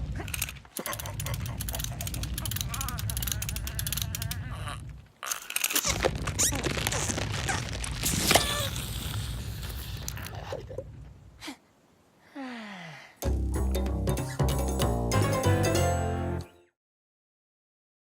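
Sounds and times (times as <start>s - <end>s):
character noises: 0.0s - 8.8s
sharp clicks: 0.2s - 4.6s, 5.2s - 6.2s
music: 13.2s - 16.8s.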